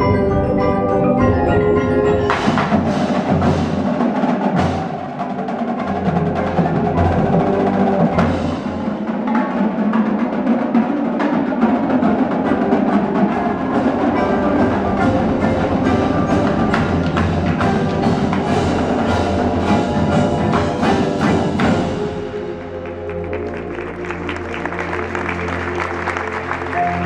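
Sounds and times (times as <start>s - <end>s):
drum and wood-block strikes: 2.2s - 23.5s.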